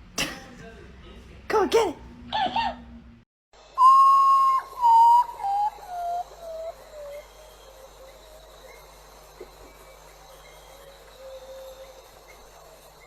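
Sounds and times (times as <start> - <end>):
cartoon falling whistle: 3.8 - 7.4.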